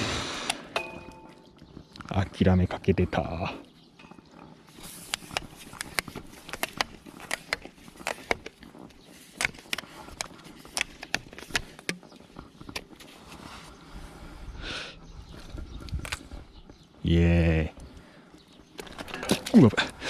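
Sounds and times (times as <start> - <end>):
fish handling clicks and knocks: 5.0 - 13.1.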